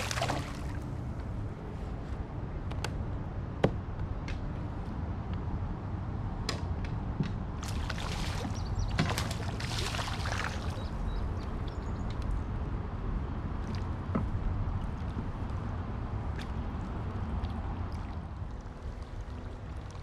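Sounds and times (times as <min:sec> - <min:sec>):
water splashing and trickling: 0:00.0 - 0:01.4, 0:07.6 - 0:12.4, 0:13.3 - 0:20.0
steady low rumble: 0:10.6 - 0:20.0.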